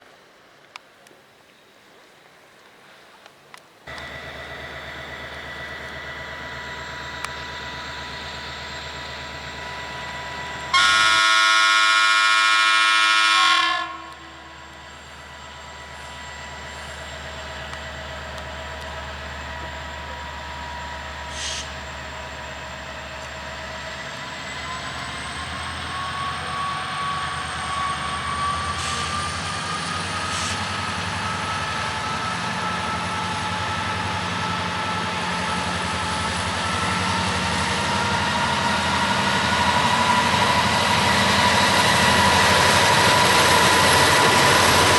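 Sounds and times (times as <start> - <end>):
traction motor whine: 3.9 - 11.2
diesel locomotive running: 3.9 - 44.9
multi-tone horn blast: 10.7 - 14.3.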